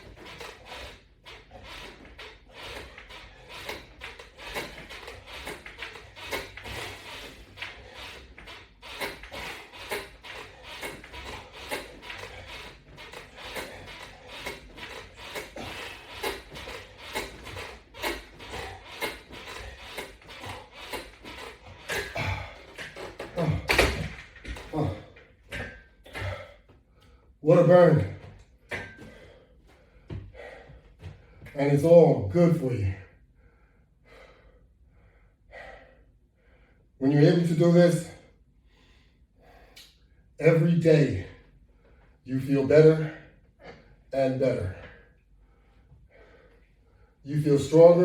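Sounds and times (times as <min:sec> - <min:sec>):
bench creaking: 0:00.0 - 0:26.7, 0:27.5 - 0:31.6
resistance bands creaking: 0:00.0 - 0:31.6, 0:47.4 - 0:48.0.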